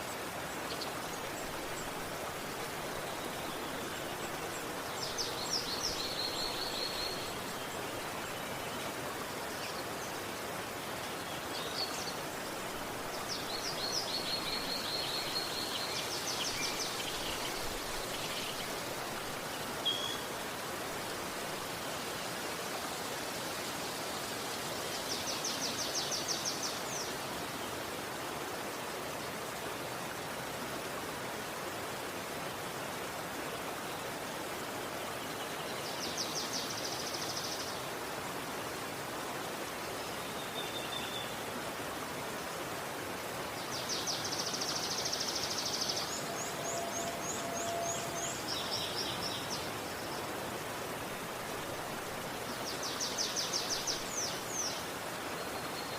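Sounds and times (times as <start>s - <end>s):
river rushing: 0.0s - 55.9s
songbirds trilling: 43.8s - 50.4s.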